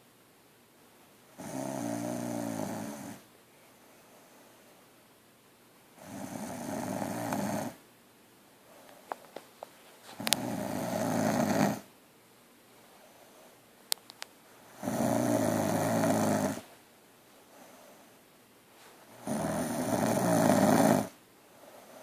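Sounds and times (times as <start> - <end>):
woman snoring: 1.4 - 3.2, 6.0 - 7.8, 10.2 - 11.9, 14.8 - 16.7, 19.2 - 21.2.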